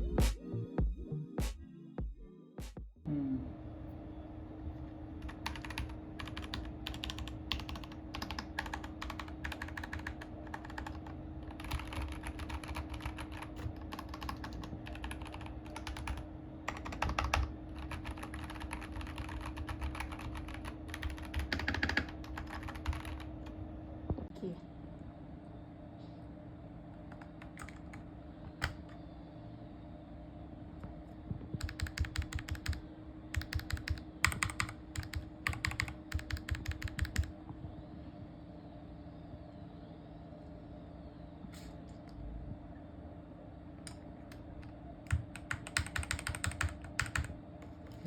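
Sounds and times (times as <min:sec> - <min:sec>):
faint steady hum: 0:00.0 - 0:48.0
mechanical keyboard typing: 0:05.2 - 0:23.3, 0:27.1 - 0:28.0, 0:28.6 - 0:28.8, 0:31.6 - 0:37.3, 0:44.3 - 0:47.8.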